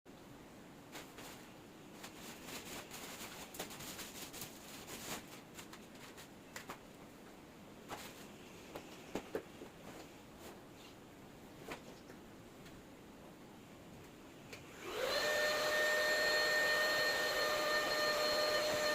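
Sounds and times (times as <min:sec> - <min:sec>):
packaging rustling: 0:00.9 - 0:06.8.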